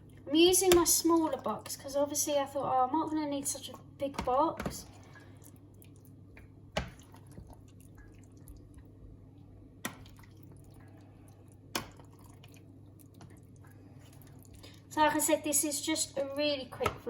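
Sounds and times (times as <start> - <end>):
wet squelching: 3.6 - 9.2, 9.8 - 15.0.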